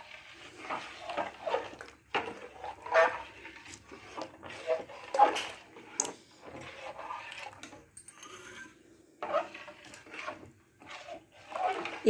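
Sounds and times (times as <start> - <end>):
spoon scraping and knocking pot: 0.0 - 12.0
spoon stirring batter in a pot: 0.0 - 12.0.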